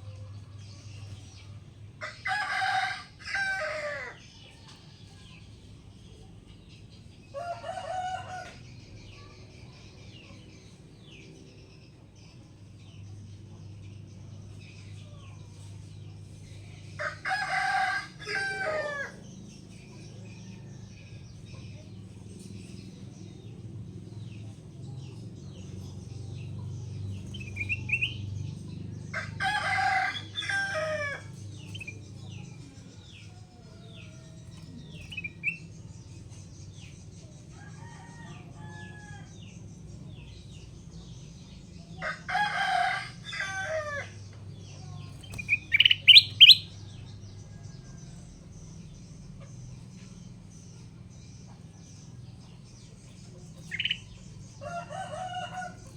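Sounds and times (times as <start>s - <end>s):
rooster crowing: 2.0s - 4.2s, 17.0s - 19.2s, 29.1s - 31.9s, 42.0s - 44.2s, 45.4s - 46.7s, 54.6s - 55.9s
high bird chirps: 45.3s - 46.8s.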